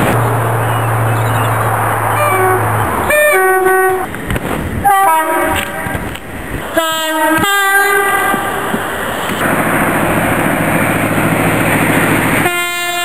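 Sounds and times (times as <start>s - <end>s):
train running: 0.0s - 13.0s
two-tone train horn: 2.1s - 4.1s, 4.8s - 6.0s, 6.7s - 8.6s, 12.4s - 13.0s.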